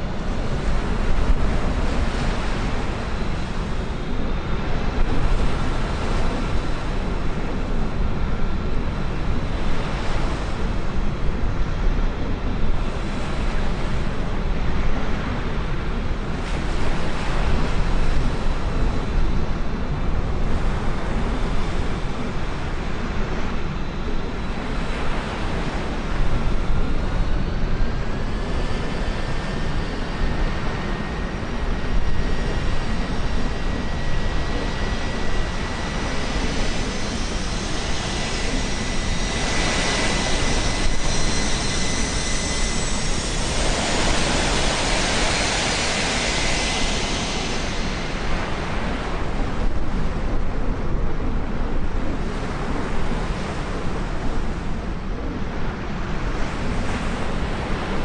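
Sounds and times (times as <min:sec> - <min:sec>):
jet engines roaring: 0:00.0 - 0:58.0
faint rising whine: 0:14.8 - 0:58.0.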